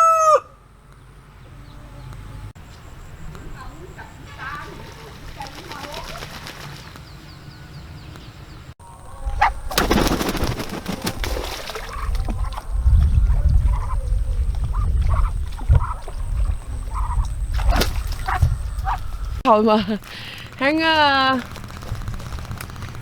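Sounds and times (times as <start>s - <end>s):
ducks quacking: 9.2s - 19.4s
low rumble: 11.2s - 23.0s.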